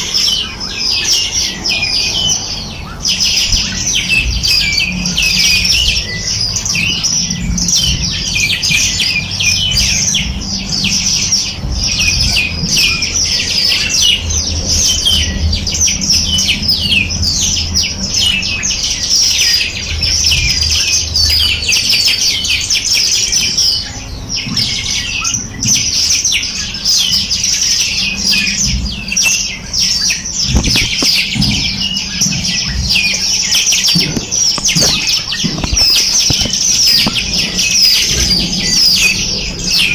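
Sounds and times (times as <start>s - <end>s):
songbirds chirping and chattering: 0.0s - 39.9s
low rumble: 1.4s - 21.7s.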